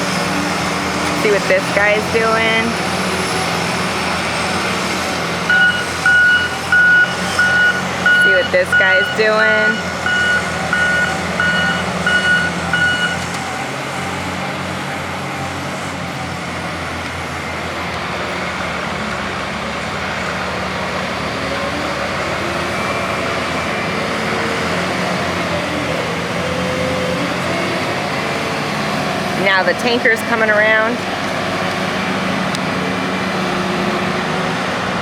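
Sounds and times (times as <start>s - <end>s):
heavy diesel machines droning: 0.0s - 35.0s
backup alarm beeping: 5.5s - 13.3s.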